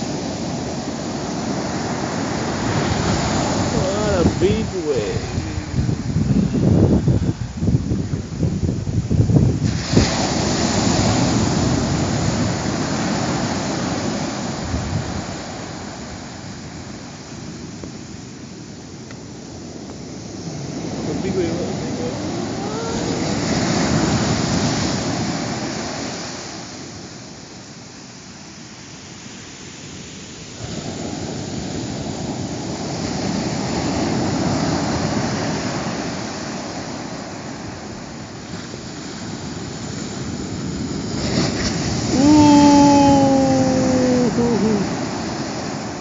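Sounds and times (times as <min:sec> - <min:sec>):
ocean waves breaking: 0:00.0 - 0:46.0
loud held falling tone: 0:42.2 - 0:44.8.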